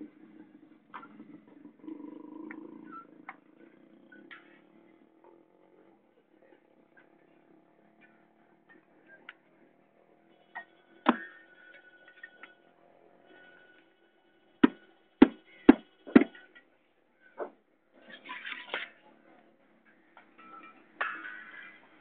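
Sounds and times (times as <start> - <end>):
hammer strikes with ringing: 14.6 - 16.6.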